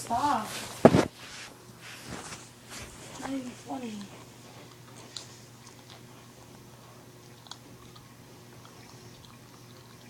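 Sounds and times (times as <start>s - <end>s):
steady low hum: 0.0s - 10.0s
wet mouth clicks and smacks: 7.2s - 10.0s.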